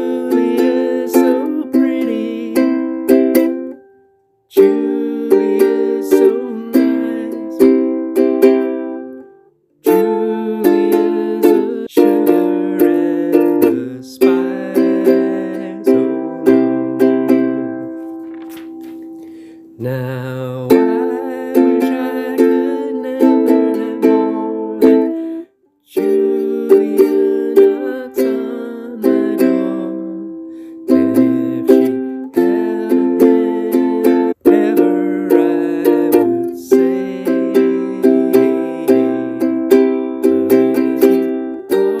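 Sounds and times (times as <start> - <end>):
plucked string notes and chords: 5.3 - 19.5, 29.0 - 42.0.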